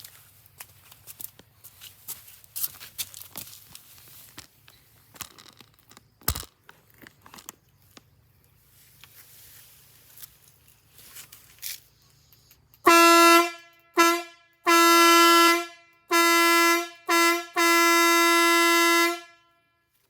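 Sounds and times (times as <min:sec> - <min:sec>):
faint handling sounds: 0:00.0 - 0:12.9
train horn blasts: 0:12.9 - 0:19.9.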